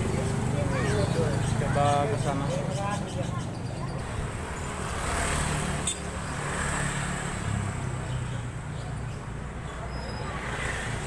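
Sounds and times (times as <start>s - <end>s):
faint voices: 0.0s - 4.0s
road traffic engine hum: 0.0s - 11.0s.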